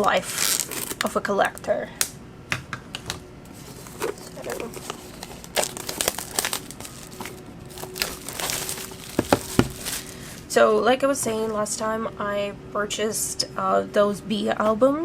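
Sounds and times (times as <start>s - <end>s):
packaging crinkling and rustling: 0.0s - 1.2s, 3.5s - 10.4s.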